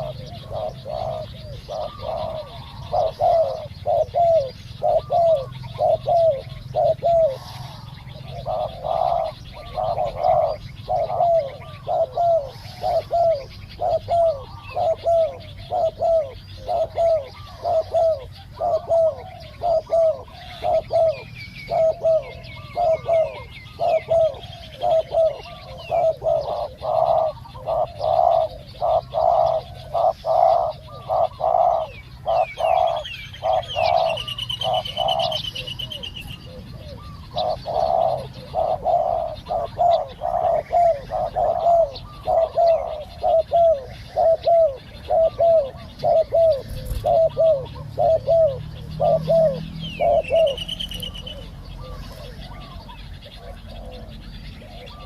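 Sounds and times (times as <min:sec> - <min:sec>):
doves cooing: 0:00.0 - 0:55.0
high bird chirps: 0:20.5 - 0:55.0.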